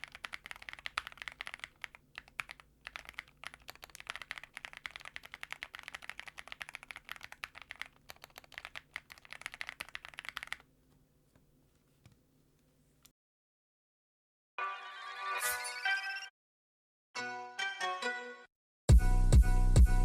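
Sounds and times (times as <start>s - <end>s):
fast mechanical keyboard typing: 0.0s - 10.7s.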